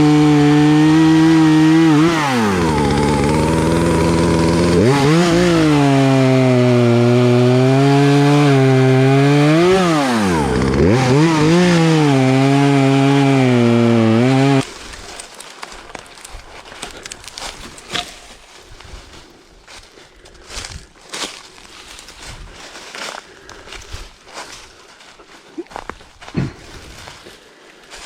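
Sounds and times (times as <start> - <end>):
chainsaw cutting log: 0.0 - 18.4
crackling and rustling: 14.6 - 19.3.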